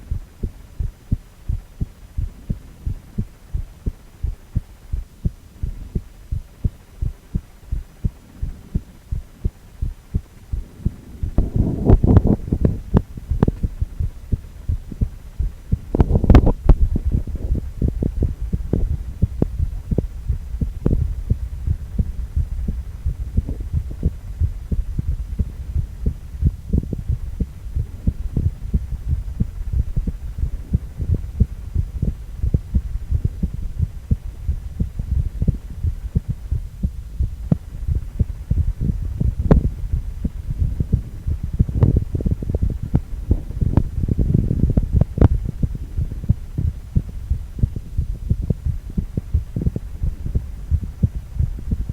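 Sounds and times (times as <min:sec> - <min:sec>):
low hum: 0:00.0 - 0:51.9
low pulsing heartbeat: 0:00.0 - 0:51.9.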